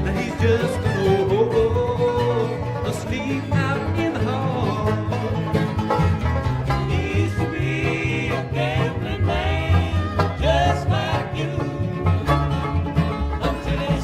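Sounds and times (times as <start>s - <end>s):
acoustic country tune: 0.0s - 14.0s.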